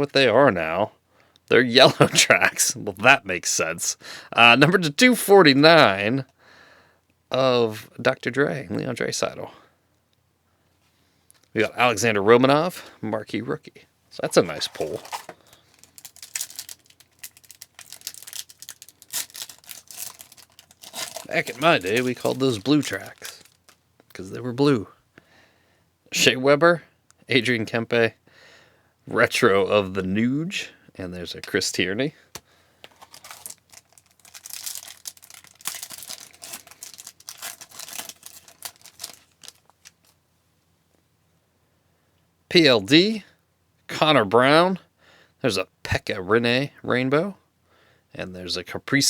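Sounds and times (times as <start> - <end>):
pack wrapper crinkling: 14.2 - 24.2, 32.8 - 40.2.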